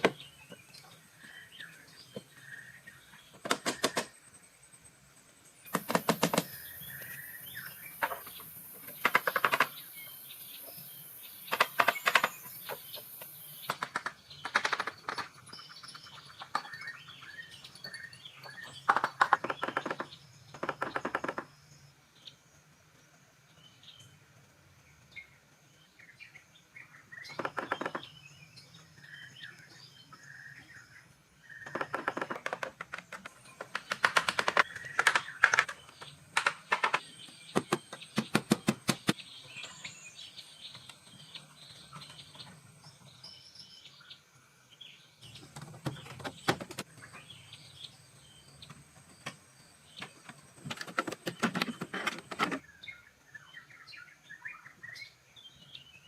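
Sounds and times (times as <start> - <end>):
small birds chirping: 0.0 - 56.0
clicking and knocking of construction work: 3.3 - 4.2, 5.7 - 7.2, 8.0 - 9.8, 11.5 - 16.8, 18.6 - 21.5, 27.3 - 28.1, 31.6 - 39.7, 45.2 - 47.2, 48.6 - 52.6.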